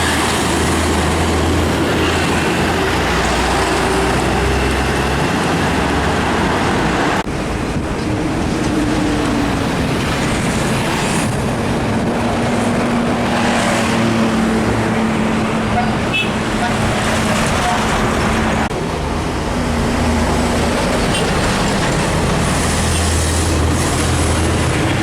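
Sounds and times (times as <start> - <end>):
truck engines: 0.0 - 25.0.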